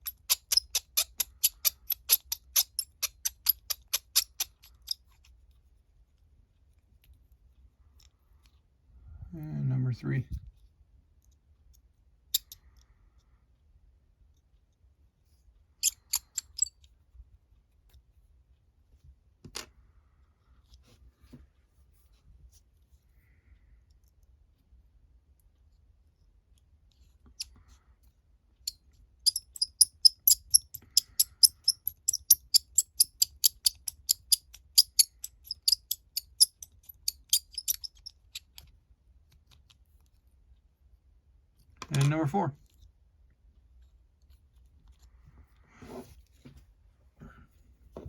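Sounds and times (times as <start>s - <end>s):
hand drill scratchy clicks: 29.3s - 38.6s.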